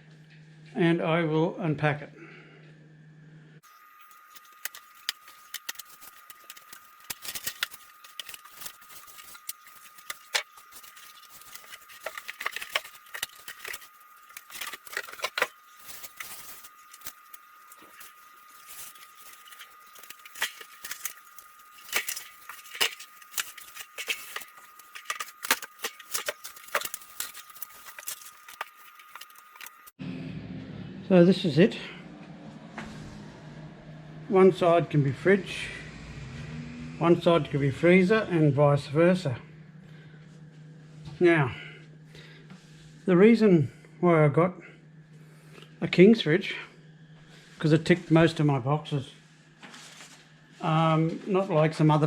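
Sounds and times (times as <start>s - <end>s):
packaging rustling and crinkling: 4.0s - 29.9s.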